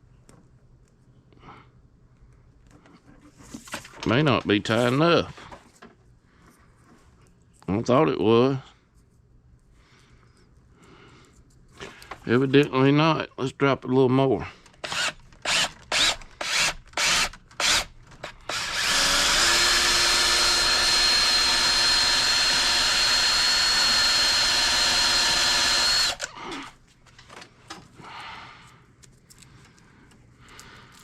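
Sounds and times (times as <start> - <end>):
power tool motor whining: 14.8 - 26.8
faint handling noise: 26.8 - 31.0.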